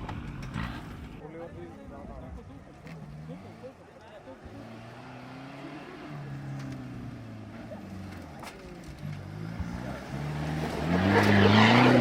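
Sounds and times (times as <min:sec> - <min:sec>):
engine revving: 0:04.4 - 0:12.0.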